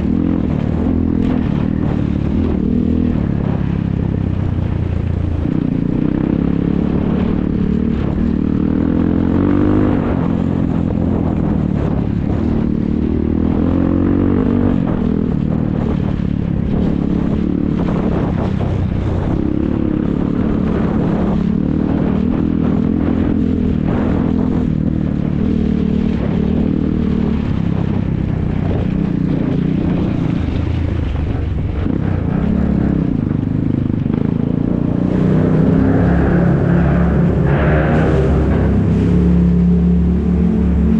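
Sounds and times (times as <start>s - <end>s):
atv engines revving: 17.2s - 40.9s.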